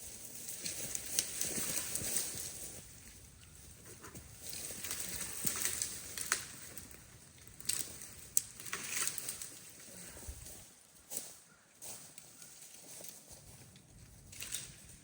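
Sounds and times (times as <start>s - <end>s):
rustling in dry leaves: 0.0s - 15.0s
twigs snapping: 0.4s - 2.5s, 4.4s - 9.8s, 14.2s - 15.0s.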